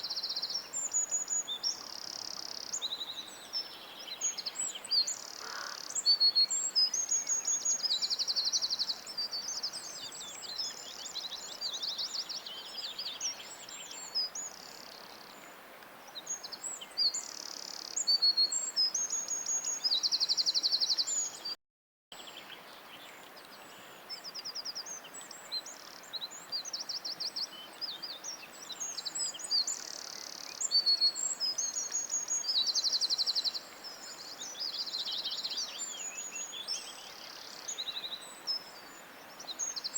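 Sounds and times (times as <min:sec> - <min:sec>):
faint steady hiss: 0:00.0 - 0:21.6, 0:22.2 - 0:39.9.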